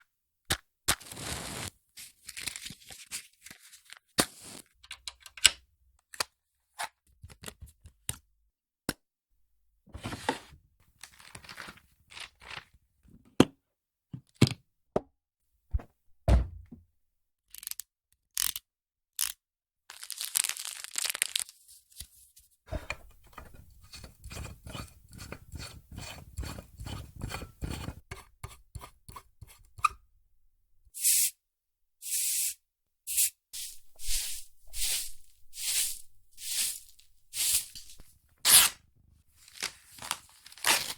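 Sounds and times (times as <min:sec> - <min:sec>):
tearing and scraping: 0:00.9 - 0:01.7, 0:33.6 - 0:38.8, 0:39.4 - 0:40.9
clicks knocks and thunks: 0:15.7 - 0:16.8.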